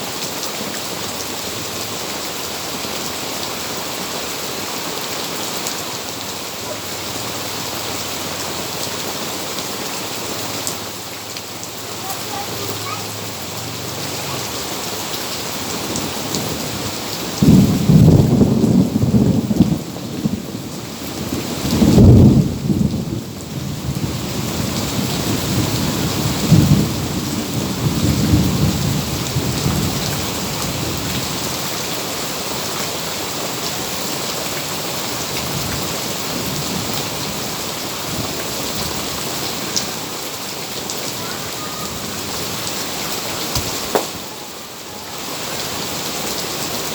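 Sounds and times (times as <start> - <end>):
steady rain: 0.0 - 46.9
low rumbling thunder: 15.7 - 31.3.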